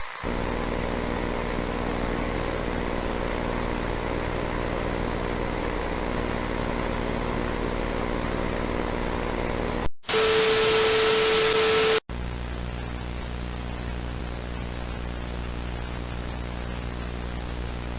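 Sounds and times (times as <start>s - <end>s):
droning hum of held tones: 0.0s - 9.9s
loud static with steady tone: 0.0s - 17.9s.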